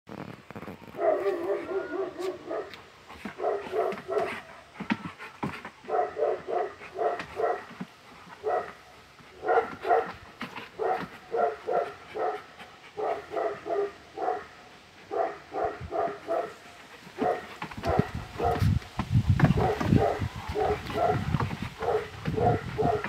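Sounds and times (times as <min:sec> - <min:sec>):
dog barking: 0:01.0 - 0:04.5, 0:05.8 - 0:07.7, 0:08.4 - 0:08.8, 0:09.4 - 0:10.2, 0:10.8 - 0:16.6, 0:17.2 - 0:18.7, 0:19.6 - 0:23.0.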